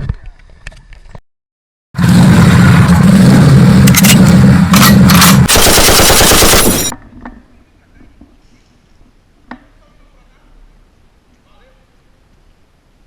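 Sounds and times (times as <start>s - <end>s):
rapid automatic gunfire: 4.8s - 6.9s.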